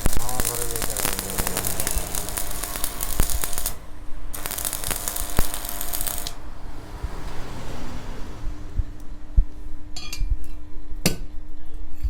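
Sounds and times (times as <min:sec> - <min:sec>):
arc welding crackling and hissing: 0:00.0 - 0:06.4.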